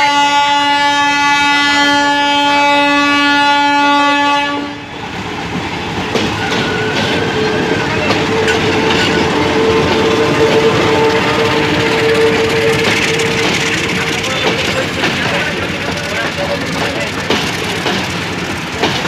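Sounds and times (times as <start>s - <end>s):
locomotive horn blast: 0.0s - 5.0s, 6.4s - 15.8s
train wheels clattering over switch: 5.5s - 19.0s.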